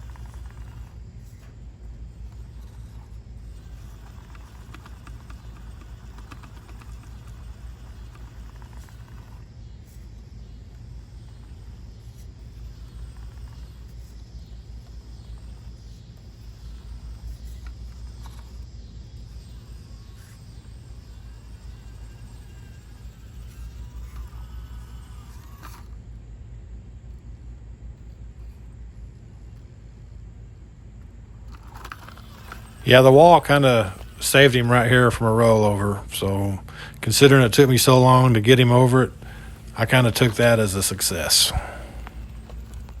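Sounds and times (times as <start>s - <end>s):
small electric motor whining: 0.0s - 43.0s
tyres clicking on stone: 2.2s - 9.5s.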